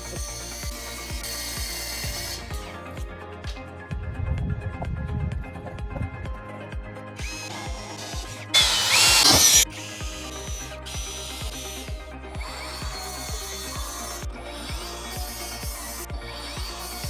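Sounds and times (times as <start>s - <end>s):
power tool running: 0.0s - 2.8s, 7.2s - 17.0s
background music with steady beat: 0.0s - 17.0s.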